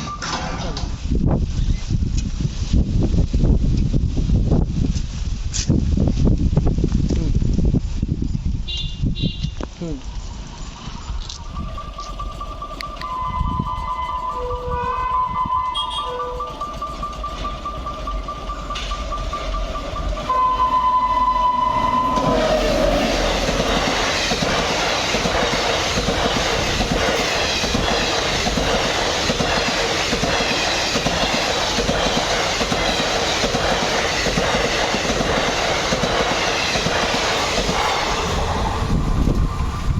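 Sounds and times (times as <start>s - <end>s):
train wheels clickety-clack: 10.8s - 39.9s
locomotive horn: 11.6s - 24.3s.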